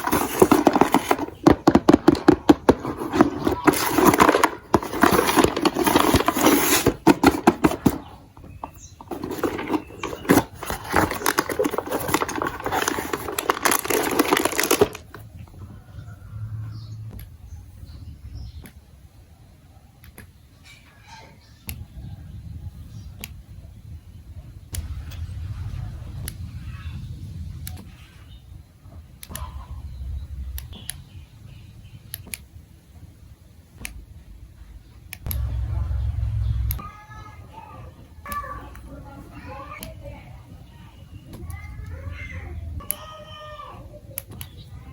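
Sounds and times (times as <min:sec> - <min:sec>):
plastic pieces and marbles rattling: 0:00.0 - 0:15.2
low rumble: 0:15.1 - 0:18.6, 0:24.7 - 0:27.6, 0:29.3 - 0:31.9, 0:35.3 - 0:36.8.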